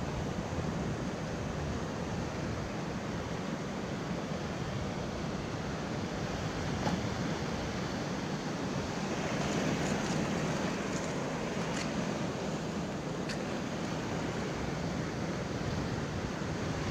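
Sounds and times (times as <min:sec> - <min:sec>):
surf breaking on rocks: 0:08.6 - 0:15.1.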